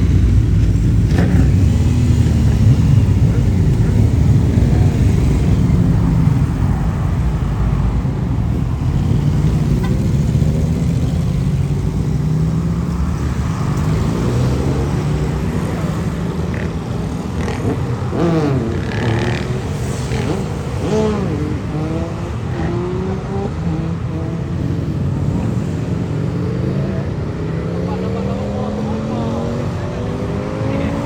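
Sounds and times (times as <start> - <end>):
motorcycle engines running: 0.0 - 31.0.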